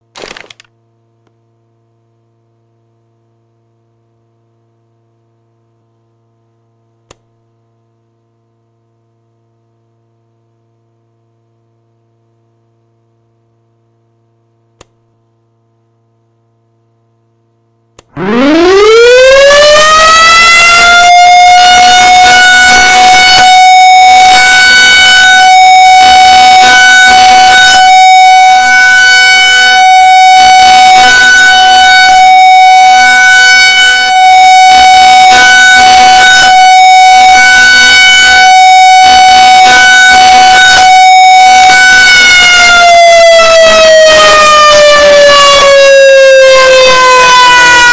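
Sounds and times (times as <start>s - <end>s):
rotating warning siren wailing: 18.1s - 47.9s.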